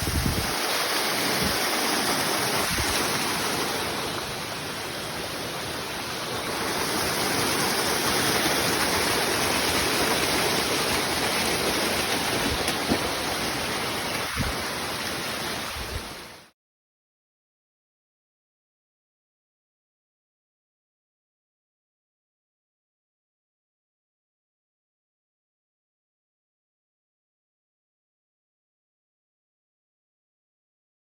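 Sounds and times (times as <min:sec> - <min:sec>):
waterfall rushing: 0:00.0 - 0:16.5.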